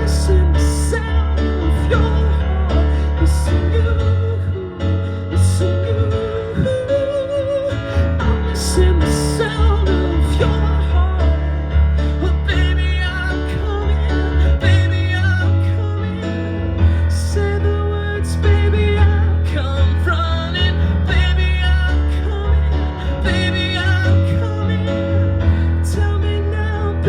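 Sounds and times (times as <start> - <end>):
low bass: 0.0 - 27.0
person singing: 0.0 - 27.0.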